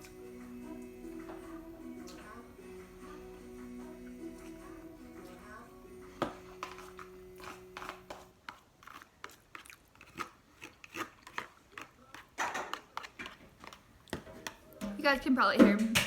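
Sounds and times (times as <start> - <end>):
faint children's tv music: 0.0 - 9.3, 11.6 - 16.0
chewing noodles: 6.4 - 14.6.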